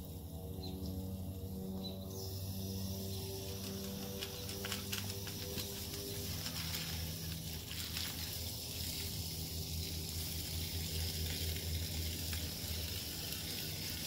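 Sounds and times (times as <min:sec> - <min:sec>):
low hum: 0:00.0 - 0:14.0
water running into a bucket: 0:03.5 - 0:14.0.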